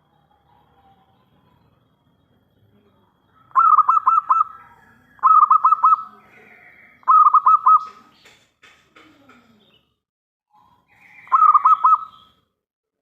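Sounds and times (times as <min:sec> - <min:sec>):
dove cooing: 0:03.4 - 0:06.2, 0:07.0 - 0:08.0, 0:11.0 - 0:12.2.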